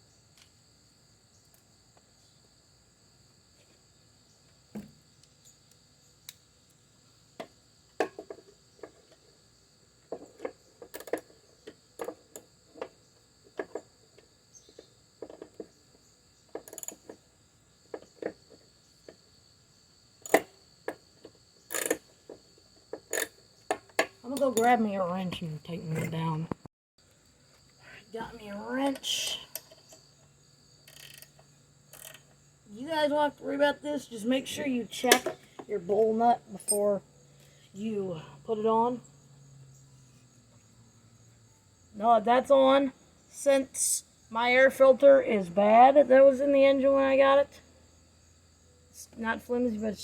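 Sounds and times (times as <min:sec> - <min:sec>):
hand tools knocking and clinking: 0:36.6 - 0:36.9.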